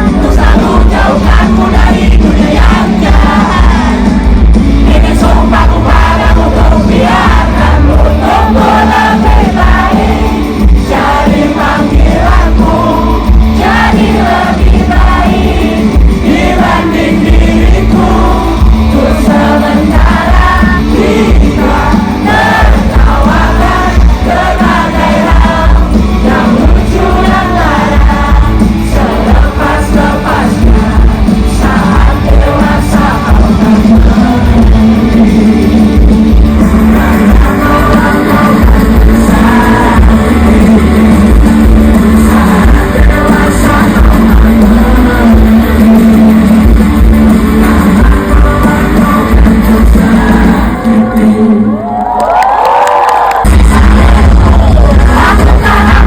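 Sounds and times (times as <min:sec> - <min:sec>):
live band music: 0:00.0 - 0:51.6, 0:53.3 - 0:56.0
heavy bass: 0:00.0 - 0:56.0
sung vocals: 0:00.0 - 0:56.0.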